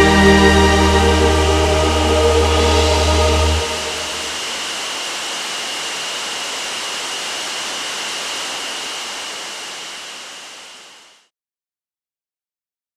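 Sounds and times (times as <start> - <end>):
thin high tone: 0.0 - 6.0
waterfall rushing: 0.0 - 11.1.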